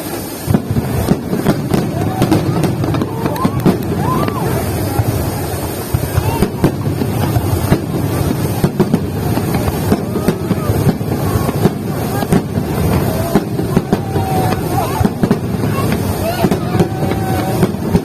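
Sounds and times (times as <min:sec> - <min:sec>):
crowd murmur: 0:00.0 - 0:18.0
fireworks bangs and cracks: 0:00.0 - 0:18.0.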